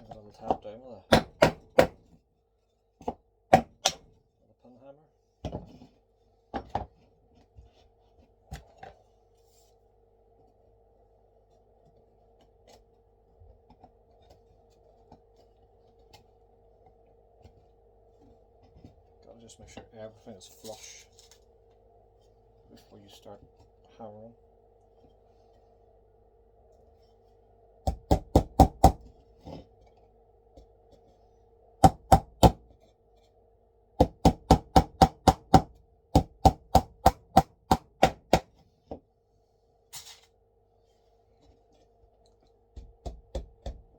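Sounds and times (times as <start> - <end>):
faint steady hum: 0.0 - 43.9
hammer tapping wooden frame: 1.1 - 2.0, 27.9 - 29.1, 31.8 - 32.6, 34.0 - 38.5.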